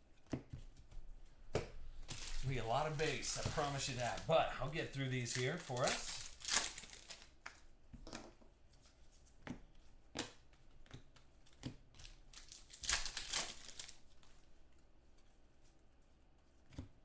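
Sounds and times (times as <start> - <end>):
foil wrappers crinkling and tearing: 2.0 - 7.4, 12.0 - 14.3.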